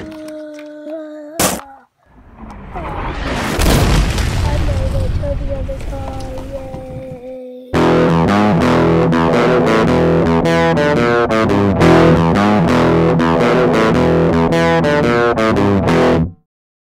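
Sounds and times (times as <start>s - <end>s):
rock music with distorted guitar: 7.8s - 16.4s.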